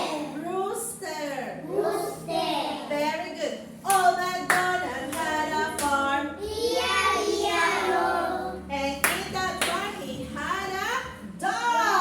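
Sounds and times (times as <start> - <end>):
hand claps: 9.0 - 9.9.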